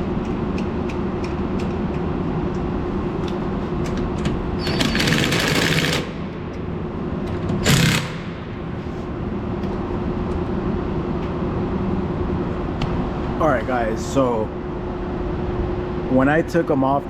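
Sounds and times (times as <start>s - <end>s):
steady low hum: 0.0s - 17.0s
impact wrench bursts: 4.6s - 6.3s, 7.6s - 8.5s.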